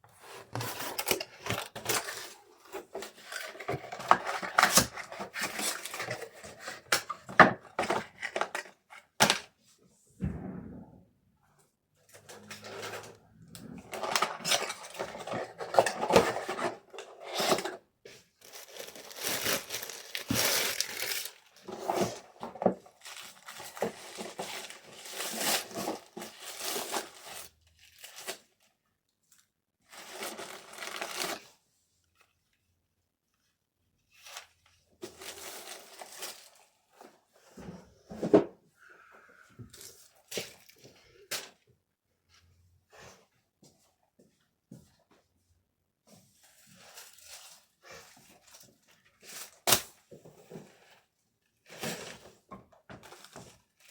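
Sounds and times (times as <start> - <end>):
packaging rustling and crinkling: 12.5 - 28.7, 29.3 - 31.5, 34.1 - 37.2.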